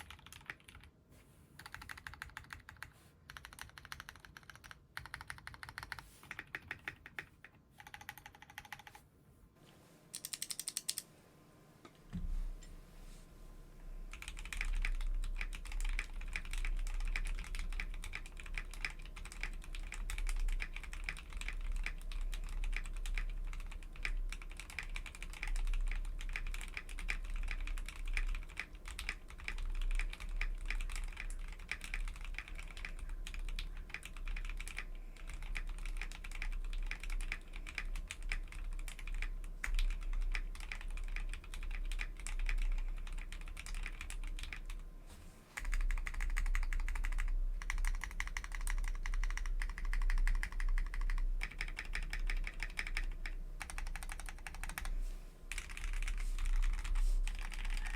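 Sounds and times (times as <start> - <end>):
fast mechanical keyboard typing: 0.0 - 0.9, 1.6 - 9.0, 10.2 - 11.0, 14.1 - 44.8, 45.6 - 57.9.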